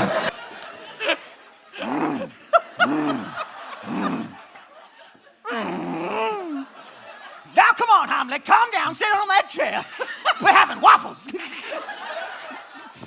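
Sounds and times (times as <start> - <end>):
person imitating animal calls: 1.8 - 4.4, 5.5 - 6.7.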